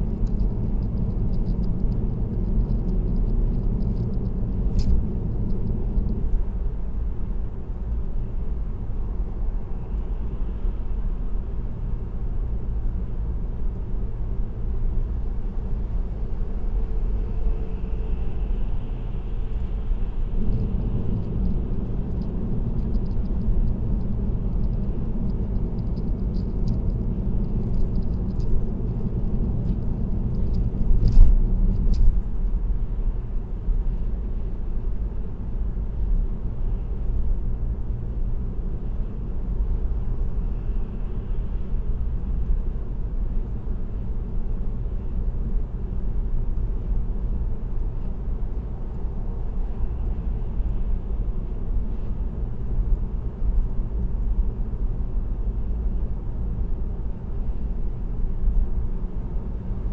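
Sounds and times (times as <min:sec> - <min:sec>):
road and engine rumble in car: 0:00.0 - 0:59.9
faint ticks: 0:20.4 - 0:32.2.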